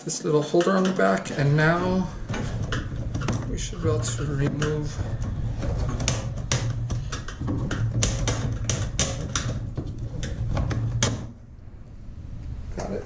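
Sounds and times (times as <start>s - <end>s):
sharp plastic clicks and knocks: 2.2s - 11.4s.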